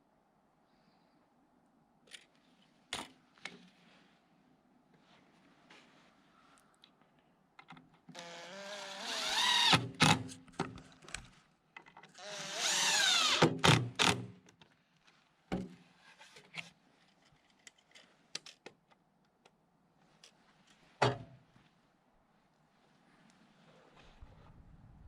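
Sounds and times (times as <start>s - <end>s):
impact driver whining: 8.2s - 10.2s, 12.2s - 14.2s.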